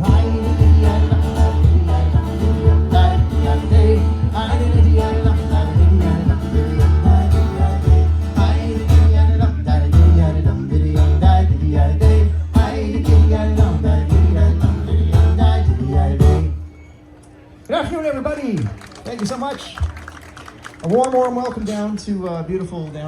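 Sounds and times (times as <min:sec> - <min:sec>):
strummed acoustic guitar: 0:00.0 - 0:16.6
live folk band playing: 0:00.0 - 0:17.5.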